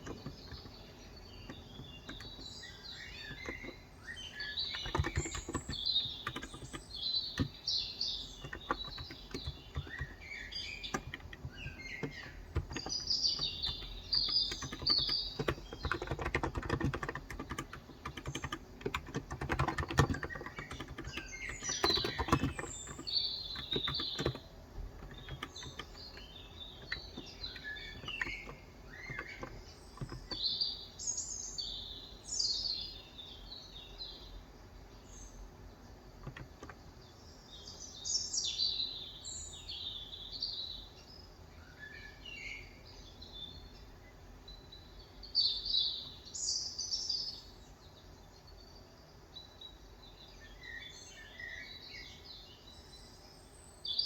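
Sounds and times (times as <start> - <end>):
keyboard typing: 0.0 - 30.6, 36.2 - 36.9
birds chirping: 0.0 - 54.0.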